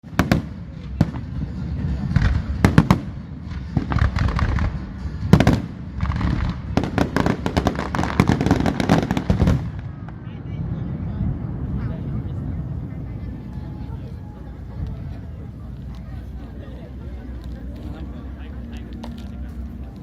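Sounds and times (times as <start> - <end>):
fireworks bangs and crackles: 0.0 - 13.8.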